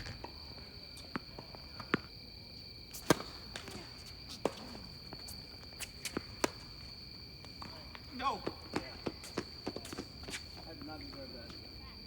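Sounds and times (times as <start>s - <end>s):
night insects droning: 0.0s - 12.0s
tennis ball hits: 3.0s - 5.2s.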